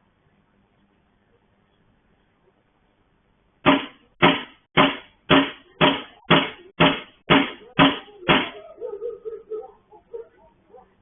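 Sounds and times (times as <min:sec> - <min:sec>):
pounding on a gate: 0:03.7 - 0:08.7.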